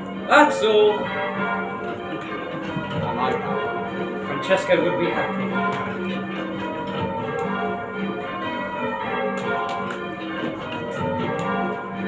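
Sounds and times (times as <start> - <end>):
church bells ringing in rounds: 0.0 - 12.0.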